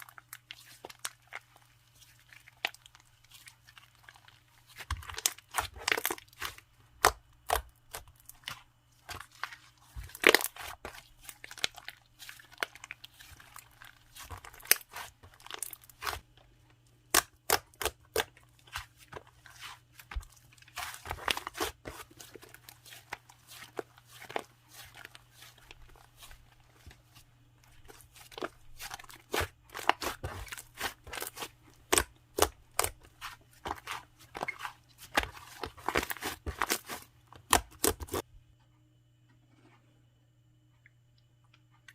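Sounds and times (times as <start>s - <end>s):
slime popping and crackling: 10.0s - 16.2s, 28.8s - 38.2s.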